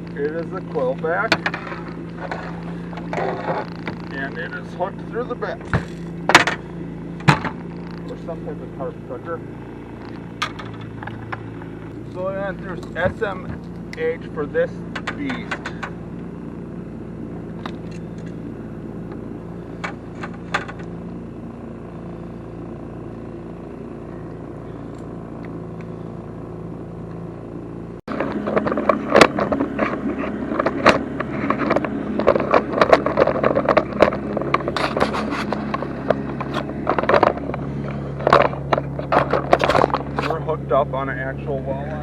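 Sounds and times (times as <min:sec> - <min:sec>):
clicking and scraping: 0:00.0 - 0:08.4, 0:09.4 - 0:14.1, 0:14.8 - 0:16.0, 0:17.6 - 0:21.1, 0:28.1 - 0:40.4
boat motor running: 0:00.0 - 0:42.0.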